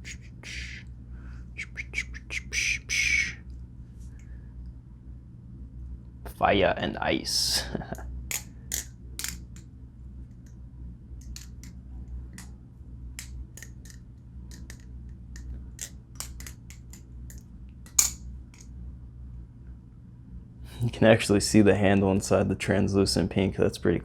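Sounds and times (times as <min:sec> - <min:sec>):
low steady hum: 0:00.0 - 0:24.0
clicks and taps of knife handling: 0:13.2 - 0:14.8, 0:15.4 - 0:18.2.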